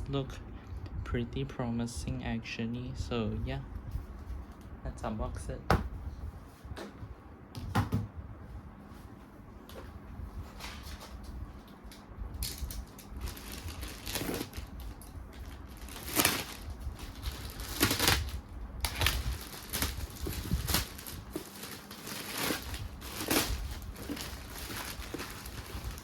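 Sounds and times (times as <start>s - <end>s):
cardboard box rustling and crunching: 13.2s - 26.0s.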